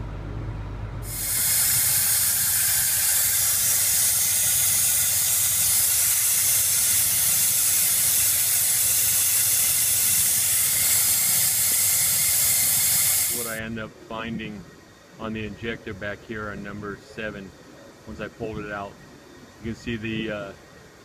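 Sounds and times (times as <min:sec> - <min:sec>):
compressed air hissing: 0:01.0 - 0:13.6.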